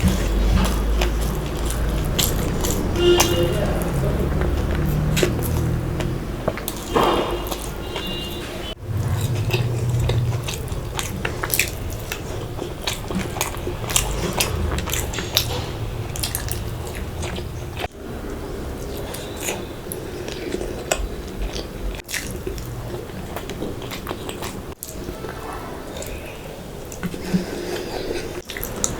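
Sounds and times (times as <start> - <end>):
mouth clicks and smacks: 0.0 - 17.9
person biting and chewing food: 0.0 - 17.9, 18.8 - 25.3.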